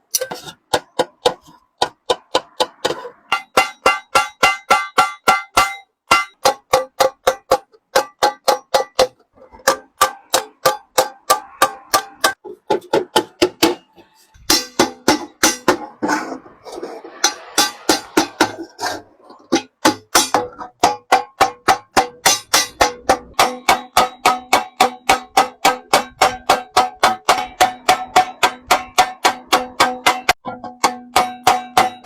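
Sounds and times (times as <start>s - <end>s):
hammer striking metal kettle: 0.1s - 16.1s, 17.1s - 32.0s.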